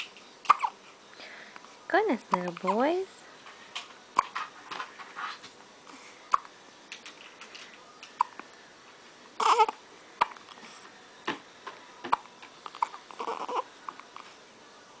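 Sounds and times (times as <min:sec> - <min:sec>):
babies hiccuping: 0:00.4 - 0:00.8, 0:09.4 - 0:10.4, 0:12.1 - 0:13.6
baby fussy cry: 0:09.4 - 0:09.8, 0:12.7 - 0:13.7.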